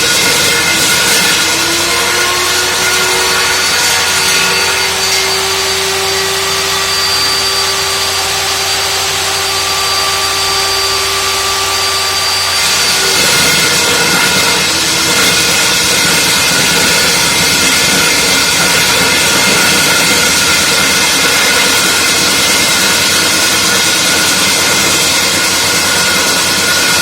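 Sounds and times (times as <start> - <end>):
core drill running with high whine: 0.0 - 27.0.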